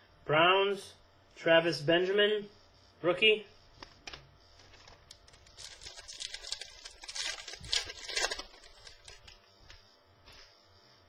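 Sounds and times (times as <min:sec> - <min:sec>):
trading cards rustling: 0:03.8 - 0:09.8.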